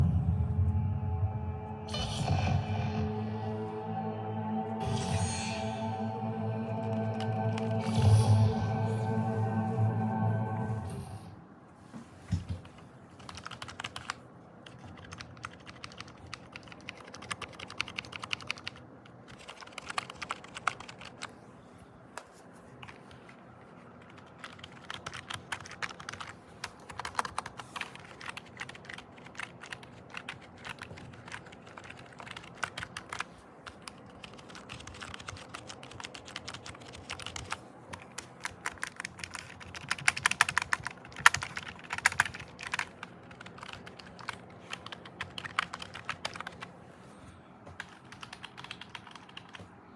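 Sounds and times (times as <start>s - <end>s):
typing on a keyboard: 12.6s - 21.4s, 24.0s - 46.7s, 47.8s - 49.7s.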